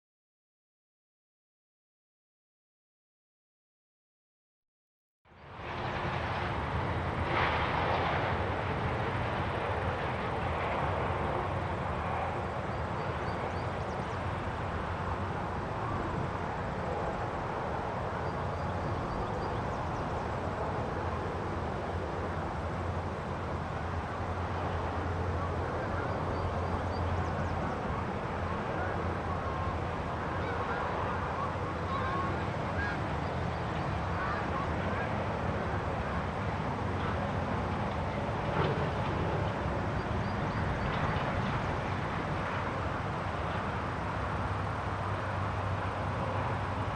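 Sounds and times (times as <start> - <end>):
steady wind: 5.3 - 46.9.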